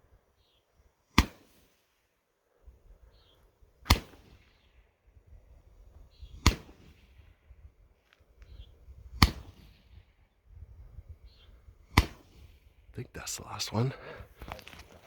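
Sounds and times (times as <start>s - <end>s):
roman candle shot pops: 3.9s - 4.4s, 9.2s - 9.6s, 12.0s - 12.3s.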